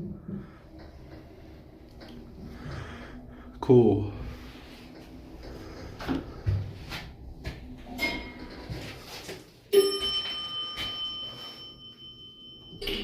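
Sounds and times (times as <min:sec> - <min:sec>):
elevator chime ding: 0:09.7 - 0:13.0.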